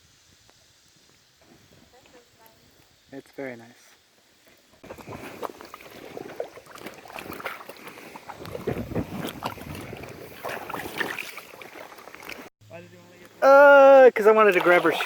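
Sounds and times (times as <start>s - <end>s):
river water splashing: 4.3s - 12.5s, 14.2s - 15.0s.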